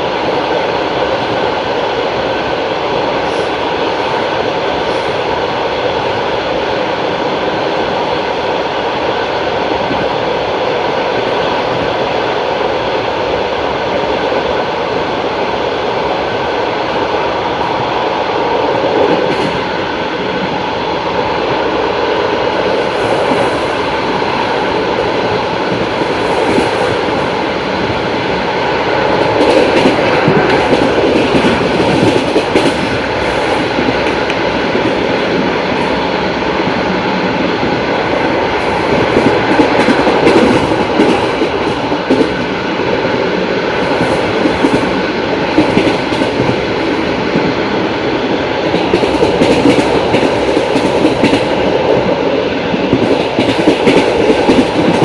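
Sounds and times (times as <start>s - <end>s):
train wheels clattering over rails: 22.5s - 55.0s.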